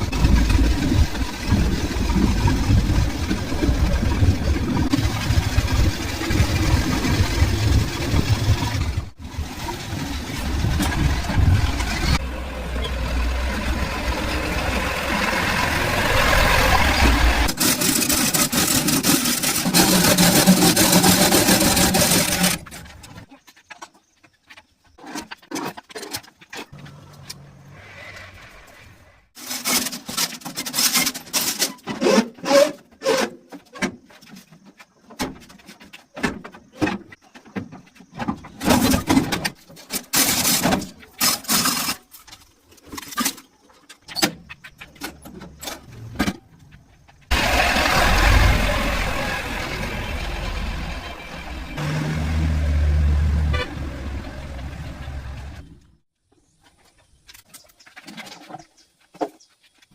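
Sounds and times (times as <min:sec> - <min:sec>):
tractor engine running: 0:00.0 - 0:23.3, 0:44.4 - 0:56.0.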